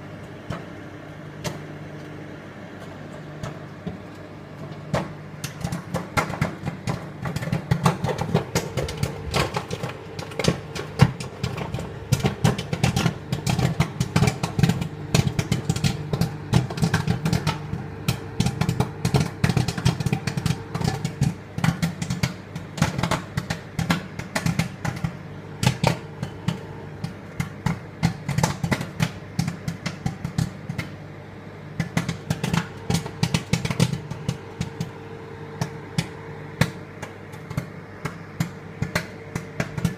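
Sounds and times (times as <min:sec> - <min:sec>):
appliance humming: 0:00.0 - 0:39.9
popcorn kernels popping: 0:00.2 - 0:39.9.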